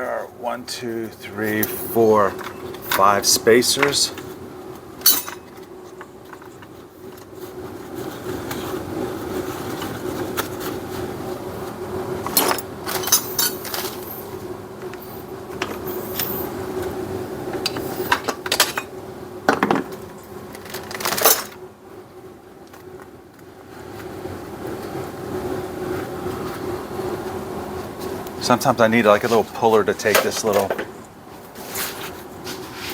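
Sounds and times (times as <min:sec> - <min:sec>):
steady low hum: 0:00.0 - 0:32.9
metal tools clinking on workbench: 0:05.0 - 0:05.6, 0:12.3 - 0:14.2, 0:15.7 - 0:16.5.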